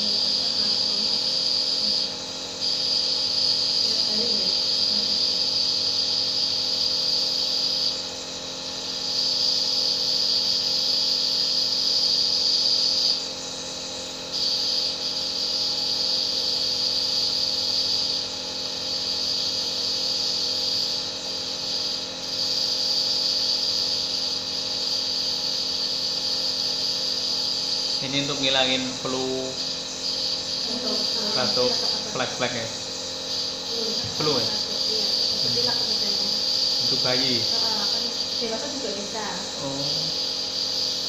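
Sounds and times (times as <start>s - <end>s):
nebulizer motor hum: 0.0s - 41.0s
loud high hiss: 18.9s - 41.0s.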